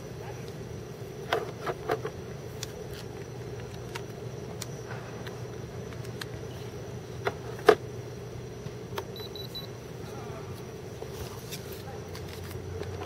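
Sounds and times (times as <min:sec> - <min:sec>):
steady low hum: 0:00.0 - 0:13.0
short high electronic beeps: 0:09.2 - 0:09.7.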